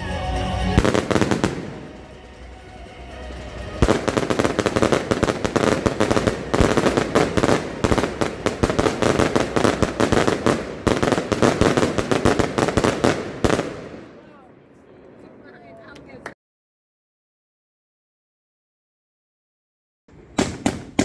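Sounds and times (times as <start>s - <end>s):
firework battery bangs and crackles: 0.7s - 16.3s, 20.1s - 21.0s.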